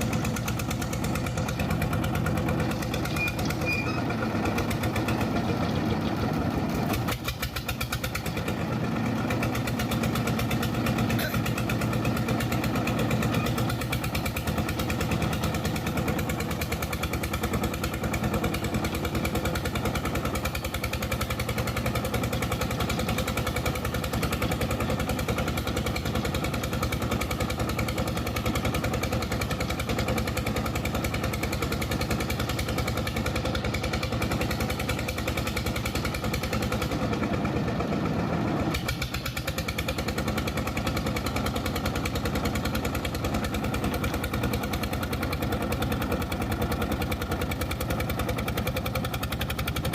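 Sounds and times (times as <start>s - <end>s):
diesel boat engine chugging: 0.0s - 49.9s.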